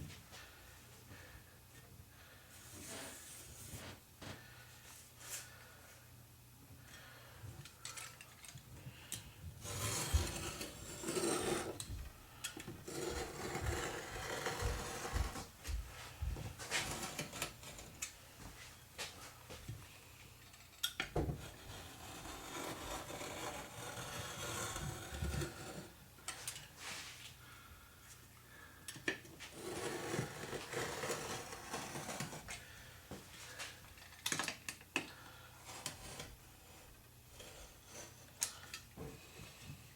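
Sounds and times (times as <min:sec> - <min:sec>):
hand rubbing and scraping: 0:09.6 - 0:19.6, 0:21.4 - 0:26.0, 0:26.7 - 0:27.4, 0:29.3 - 0:33.8.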